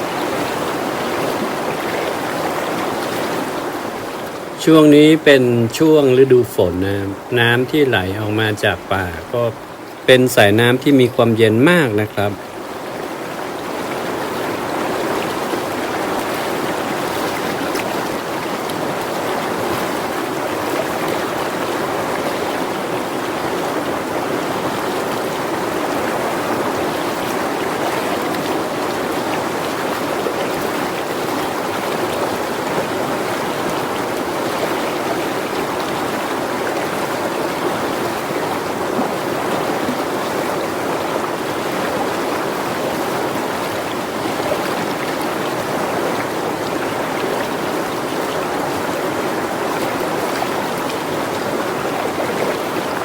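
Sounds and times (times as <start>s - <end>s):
river water rushing: 0.0s - 53.0s.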